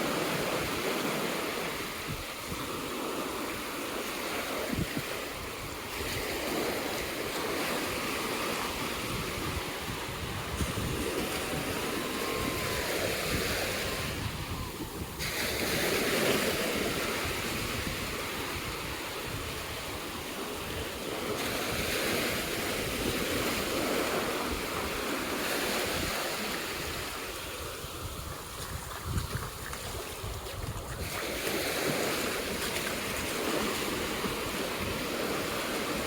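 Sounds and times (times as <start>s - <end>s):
sea surf breaking: 0.0s - 36.0s
wind buffeting microphone: 0.0s - 36.0s.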